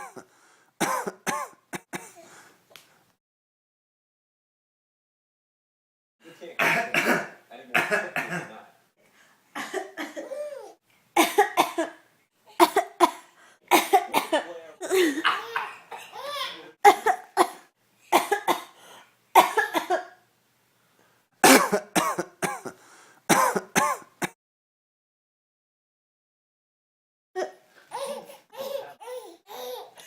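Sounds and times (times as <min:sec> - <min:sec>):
person coughing: 0:00.0 - 0:02.2, 0:06.6 - 0:08.6, 0:21.4 - 0:24.4
baby laughing: 0:10.2 - 0:10.8, 0:15.0 - 0:16.7, 0:27.4 - 0:30.0.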